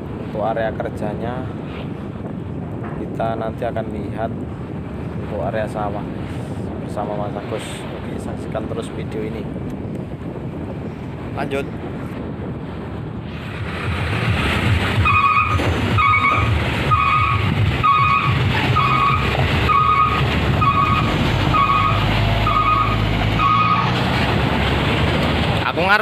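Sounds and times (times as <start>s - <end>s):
heavy truck engine running: 12.7s - 25.8s
repeating electronic beep: 15.1s - 23.8s.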